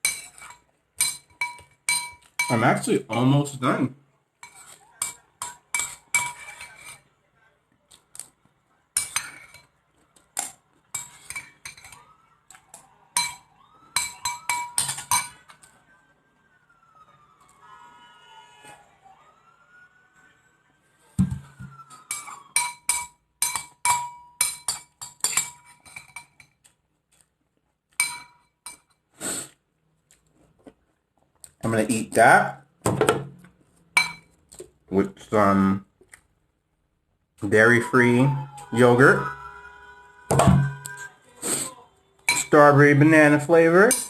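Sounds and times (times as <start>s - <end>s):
metal spoon clinking ceramic bowl: 0.0s - 3.2s, 4.4s - 7.0s, 10.4s - 12.0s, 13.2s - 13.4s, 14.0s - 15.4s, 22.0s - 26.6s, 28.0s - 28.9s, 34.0s - 34.3s, 42.3s - 42.6s.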